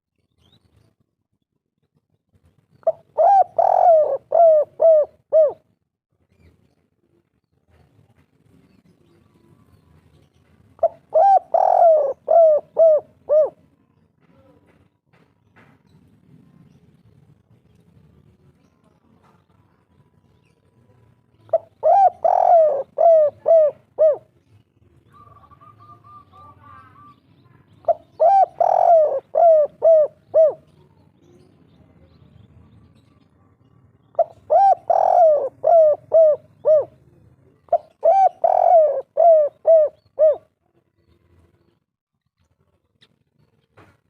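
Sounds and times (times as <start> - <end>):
dove cooing: 2.8 - 5.6, 10.8 - 13.7, 21.4 - 24.4, 25.1 - 27.1, 27.8 - 31.0, 34.0 - 40.5.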